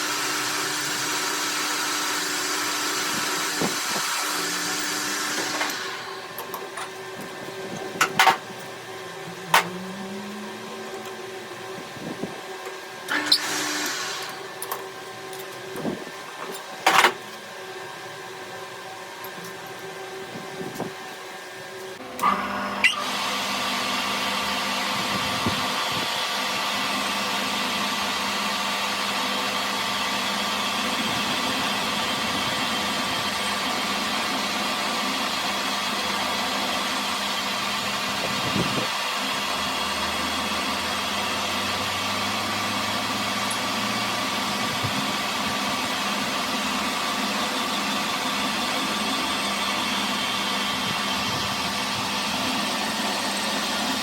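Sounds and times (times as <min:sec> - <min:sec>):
electric motor humming: 0:00.0 - 0:14.9.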